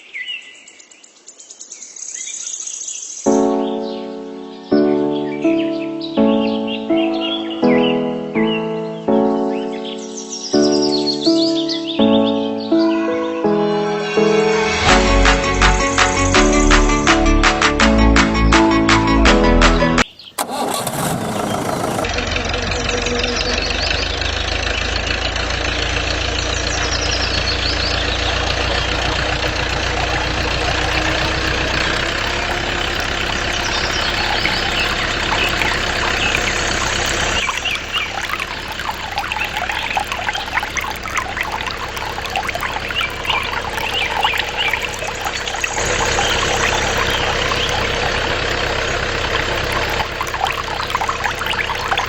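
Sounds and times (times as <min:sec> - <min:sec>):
small motor running: 0:27.5 - 0:41.9.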